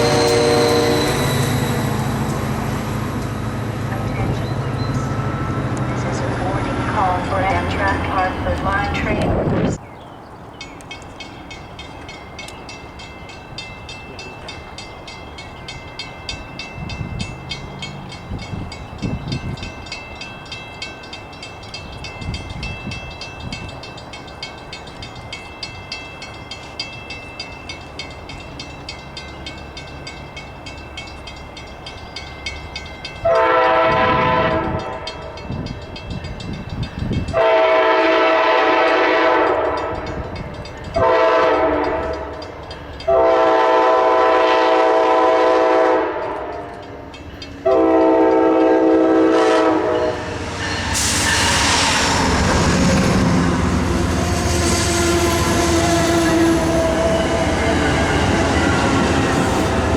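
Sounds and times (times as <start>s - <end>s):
locomotive multi-tone horn: 0.0s - 2.4s, 33.2s - 35.1s, 37.4s - 40.1s, 41.0s - 42.3s, 43.1s - 46.8s, 47.6s - 59.9s
train rumbling: 0.0s - 59.9s.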